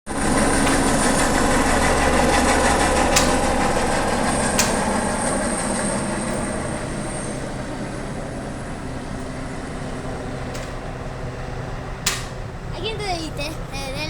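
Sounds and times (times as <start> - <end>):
helicopter turbine whine and drone: 0.1 - 14.0
sharp clicks: 0.6 - 5.4, 12.0 - 12.5.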